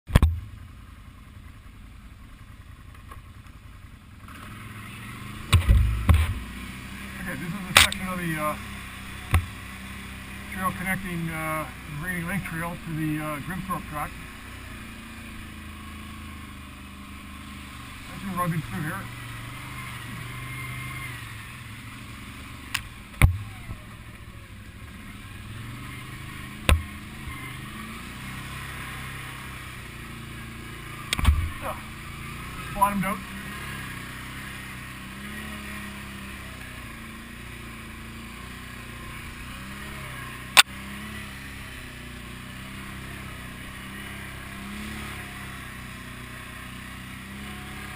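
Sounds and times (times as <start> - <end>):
atv engine rumbling: 0.0 - 47.9
wind and road noise: 0.1 - 47.9
sharp knocks: 5.5 - 6.4, 26.6 - 27.0.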